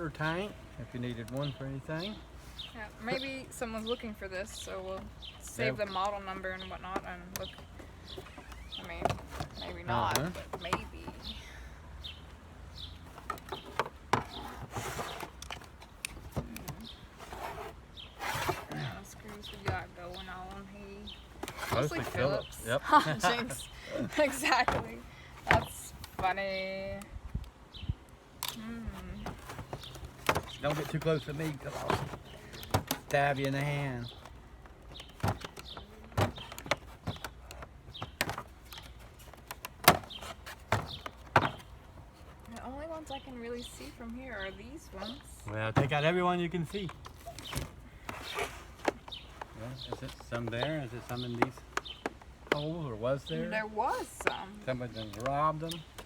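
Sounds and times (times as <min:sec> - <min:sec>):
loose parts being handled: 0:12.3 - 0:26.8, 0:27.4 - 0:44.2, 0:44.9 - 0:56.0
clicks and knocks of parts: 0:13.0 - 0:17.0, 0:29.2 - 0:42.7.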